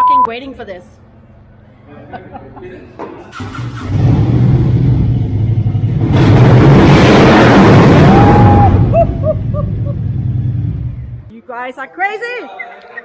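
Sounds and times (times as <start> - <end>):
motorcycle engine revving: 3.3 - 11.3.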